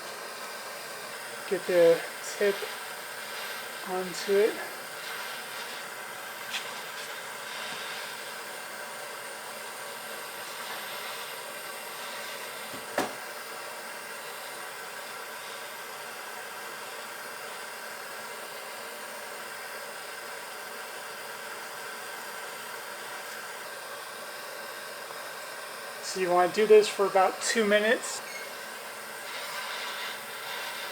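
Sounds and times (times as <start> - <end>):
gas torch flame hissing: 0.0 - 30.9
short sharp knock: 13.0 - 13.2.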